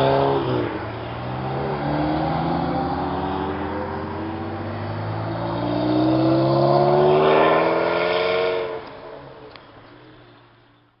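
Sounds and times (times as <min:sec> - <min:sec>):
car engine accelerating hard: 0:00.0 - 0:09.6.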